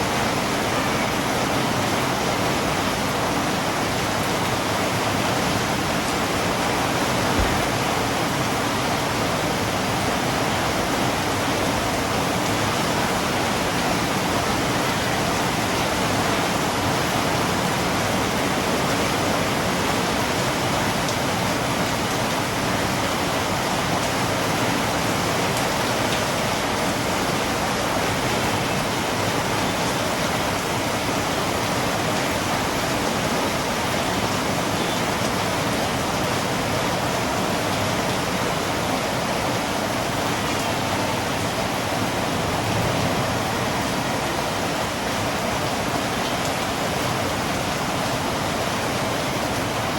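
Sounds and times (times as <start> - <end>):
heavy rain falling: 0.0 - 49.9.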